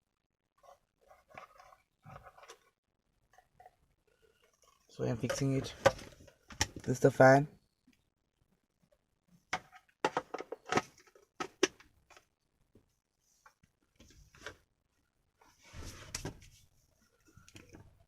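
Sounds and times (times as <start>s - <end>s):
plastic clicks and knocks: 9.5s - 12.3s.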